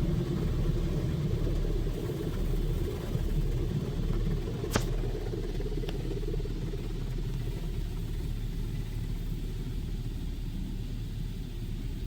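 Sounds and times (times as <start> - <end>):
sharp click: 4.7 - 5.0
low rumble inside car wash: 5.1 - 12.0.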